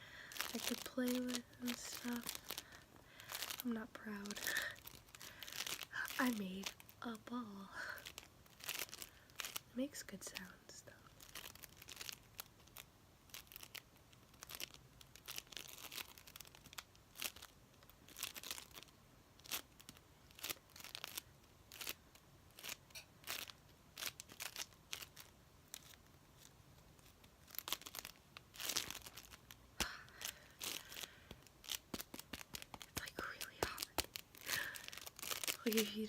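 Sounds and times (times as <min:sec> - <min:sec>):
floam squeezed crackling: 0:00.1 - 0:07.3.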